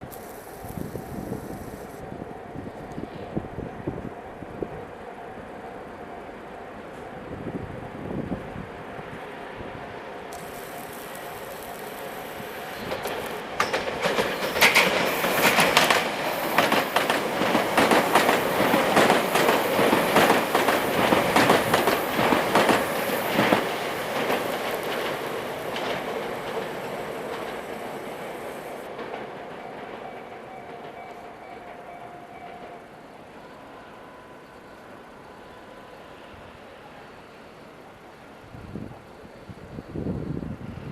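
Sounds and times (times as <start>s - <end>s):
train passing: 0.0s - 40.9s
wheels clicking over rail joints: 10.3s - 32.8s.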